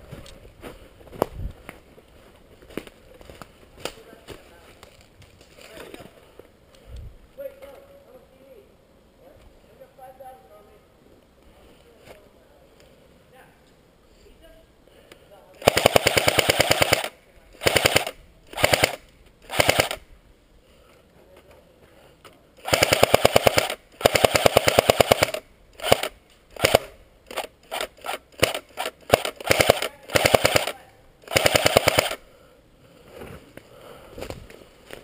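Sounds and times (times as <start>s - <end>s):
airsoft gun bursts: 15.6s - 20.1s, 22.6s - 32.2s.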